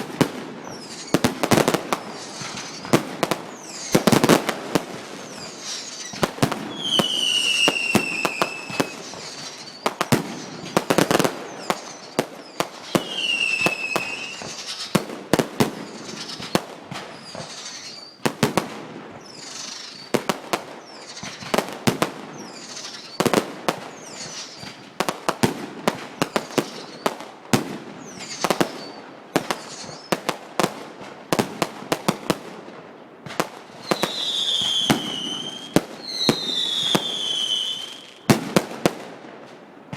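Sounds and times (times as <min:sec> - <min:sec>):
firework bangs and crackle: 0:00.0 - 0:39.9
firework whistles falling in pitch: 0:00.6 - 0:04.5, 0:05.2 - 0:18.2, 0:19.1 - 0:21.7, 0:22.3 - 0:24.8, 0:26.2 - 0:27.2, 0:28.0 - 0:30.3, 0:33.7 - 0:38.3.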